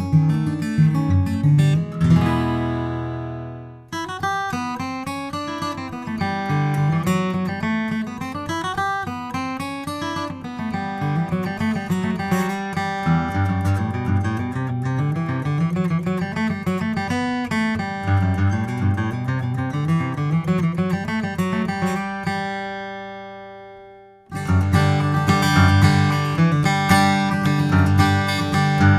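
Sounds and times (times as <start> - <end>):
plucked guitar melody: 0.0 - 28.9
acoustic guitar chord ringing: 0.1 - 4.8.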